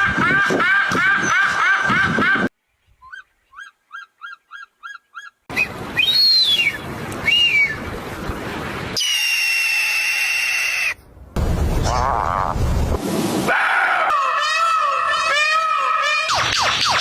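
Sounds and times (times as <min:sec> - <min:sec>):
bird calls: 0:02.7 - 0:06.8.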